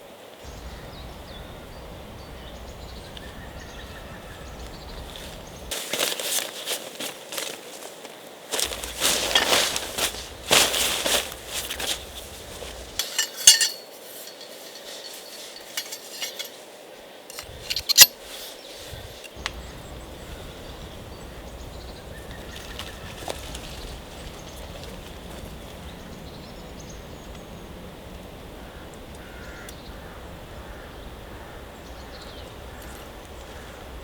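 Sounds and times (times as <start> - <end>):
steady background hiss: 0.0 - 34.0
metal cookware clattering: 8.6 - 16.6
sharp metal clinks: 8.6 - 16.7, 17.3 - 18.4.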